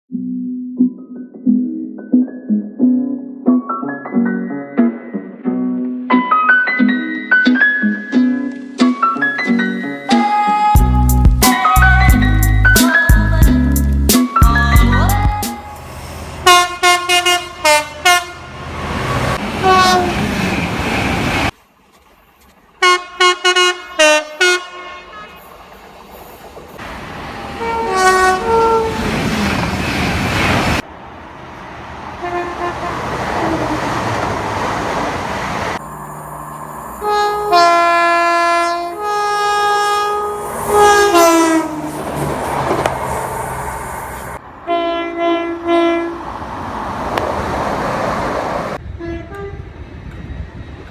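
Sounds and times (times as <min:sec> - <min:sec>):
passing trains: 0:09.2 - 0:50.9
train horns: 0:15.2 - 0:21.5, 0:22.8 - 0:25.4, 0:27.4 - 0:29.6, 0:32.1 - 0:46.5, 0:48.8 - 0:49.8.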